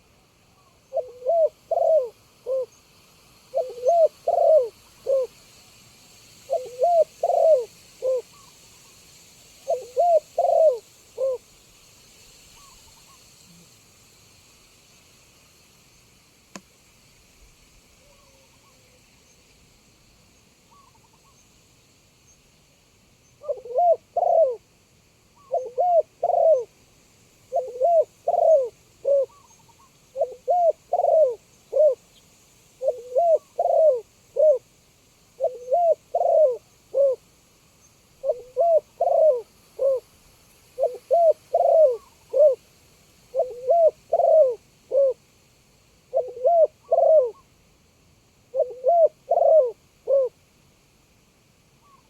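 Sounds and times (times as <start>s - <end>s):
dove cooing: 0.6s - 2.8s, 3.5s - 5.4s, 6.5s - 8.5s, 9.6s - 11.4s, 23.4s - 24.6s, 25.4s - 26.7s, 27.5s - 32.1s, 32.8s - 34.7s, 35.4s - 37.2s, 38.2s - 40.1s, 40.8s - 42.6s, 43.3s - 45.2s, 46.1s - 47.5s, 48.5s - 50.4s.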